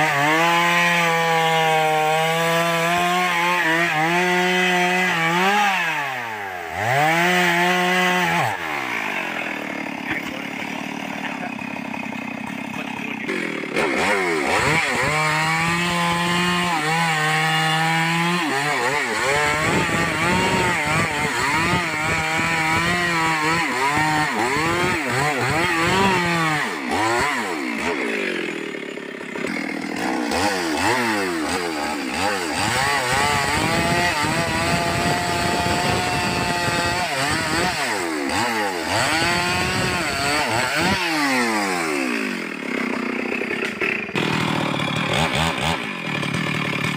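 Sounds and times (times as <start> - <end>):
chainsaw cutting through wood: 0.0 - 46.9.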